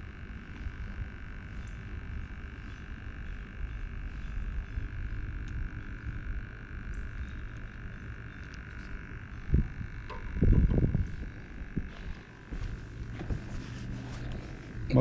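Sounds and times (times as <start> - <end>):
low uneven rumble: 8.2 - 15.0.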